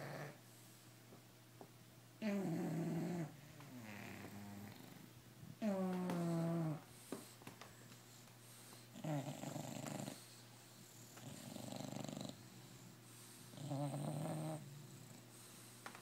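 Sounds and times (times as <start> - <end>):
dog snoring: 0.0 - 0.4, 2.2 - 6.9, 8.8 - 15.6.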